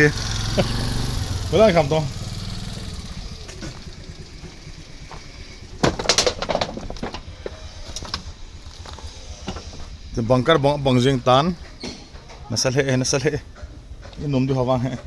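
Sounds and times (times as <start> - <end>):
vehicle engine idling: 0.0 - 15.0
knocks and clatter: 3.4 - 9.9, 13.3 - 15.0.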